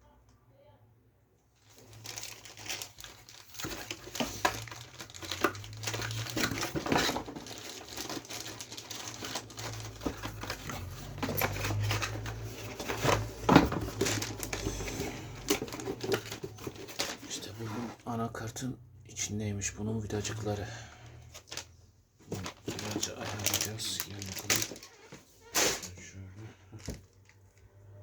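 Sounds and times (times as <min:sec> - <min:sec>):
plastic packaging crinkling: 0:01.6 - 0:17.6, 0:22.3 - 0:26.0.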